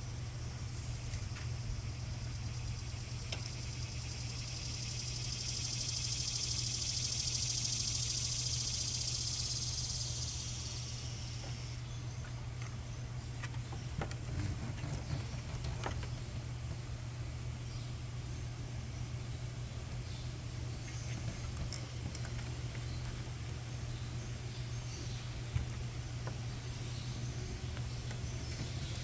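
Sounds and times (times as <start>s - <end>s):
pulsing insect buzz: 0.0s - 11.9s.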